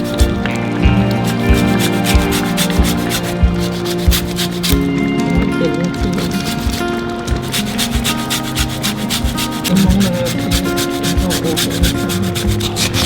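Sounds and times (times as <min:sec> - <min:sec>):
background music: 0:00.0 - 0:13.0
spatula scraping a pot: 0:07.4 - 0:13.0.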